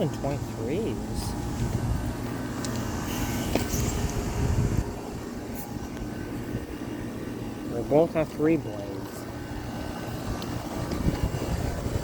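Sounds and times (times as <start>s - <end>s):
air conditioner fan and compressor hum: 0.0s - 12.0s.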